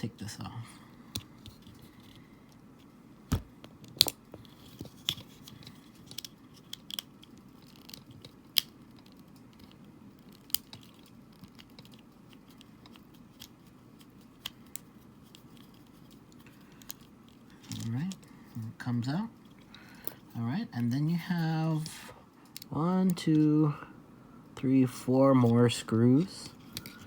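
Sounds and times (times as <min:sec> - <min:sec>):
screwdriver and plastic parts clicking: 0:03.8 - 0:18.2.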